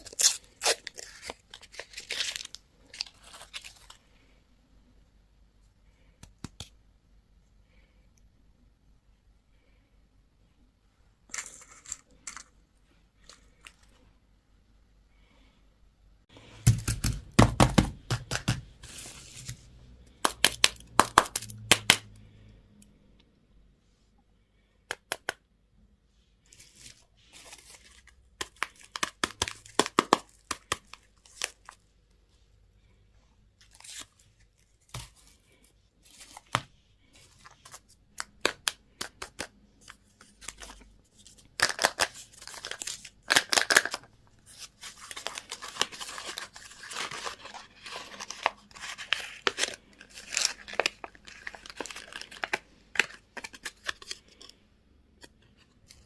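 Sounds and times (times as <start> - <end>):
packaging torn and crinkled: 0.0 - 4.0, 41.5 - 54.5.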